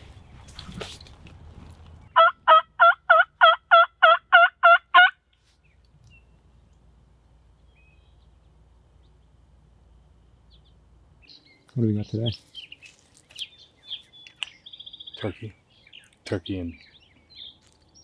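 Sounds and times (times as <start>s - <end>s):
turkey yelps: 2.2s - 5.2s.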